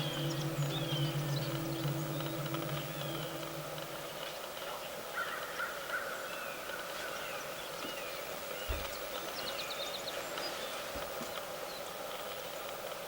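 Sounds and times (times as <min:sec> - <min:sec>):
low bumps: 0:00.0 - 0:04.6
birds chirping: 0:00.0 - 0:12.0
background hiss: 0:00.0 - 0:13.0.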